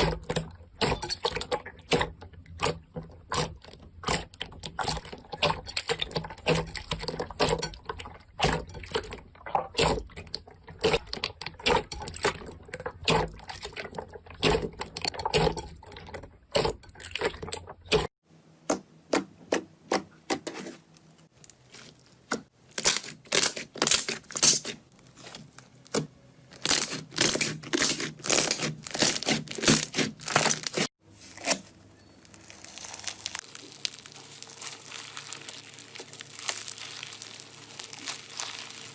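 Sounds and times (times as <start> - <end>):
slime squished by hand: 26.6 - 38.9.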